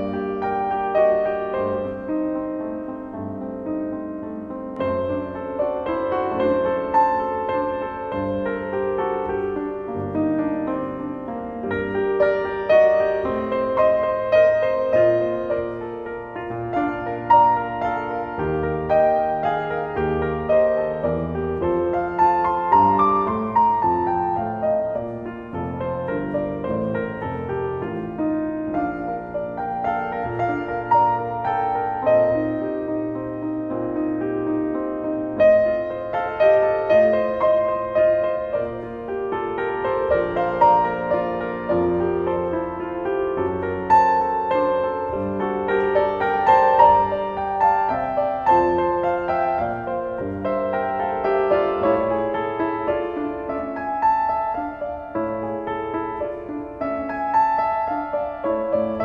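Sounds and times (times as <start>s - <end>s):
gentle piano music: 0.0s - 59.0s.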